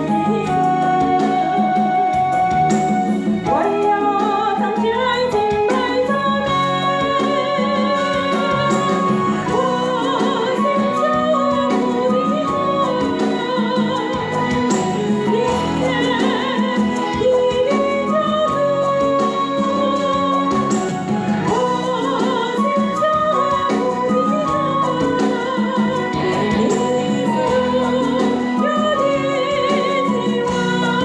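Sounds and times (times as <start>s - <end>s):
instrumental accompaniment: 0.0s - 31.0s
person singing praise song: 3.5s - 20.6s.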